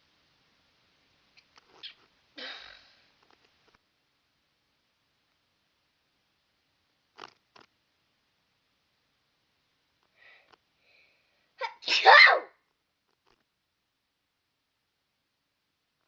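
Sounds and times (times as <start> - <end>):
person sneezing loudly: 11.6 - 12.5.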